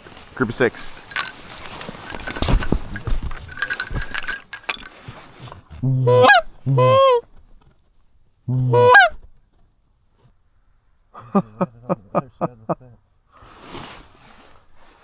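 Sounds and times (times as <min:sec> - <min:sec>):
rustling: 0:00.0 - 0:08.4, 0:13.4 - 0:15.0
goose honking: 0:05.9 - 0:07.2, 0:08.5 - 0:09.2.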